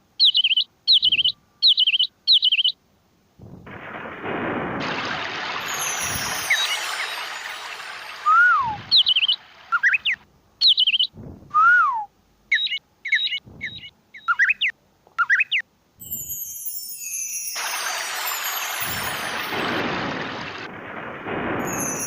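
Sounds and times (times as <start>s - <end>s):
whistled bird chirps: 0.2s - 2.8s, 6.0s - 7.4s, 8.2s - 15.6s
dull low thumps: 3.4s - 4.8s, 11.1s - 11.7s, 13.4s - 14.1s
falling whistles: 3.8s - 16.3s.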